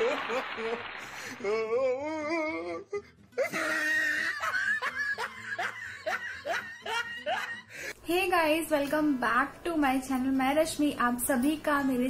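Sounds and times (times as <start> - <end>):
giggling laughs: 0.0 - 1.7, 3.4 - 7.8
music: 1.0 - 12.0.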